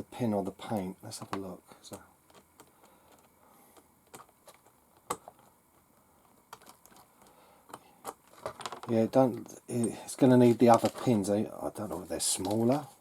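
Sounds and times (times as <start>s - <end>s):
small parts clicking and tapping: 2.2s - 9.2s.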